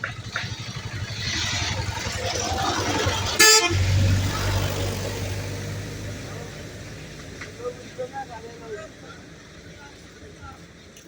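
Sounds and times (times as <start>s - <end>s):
low engine hum: 0.0s - 11.0s
vehicle horn toot: 3.3s - 4.0s.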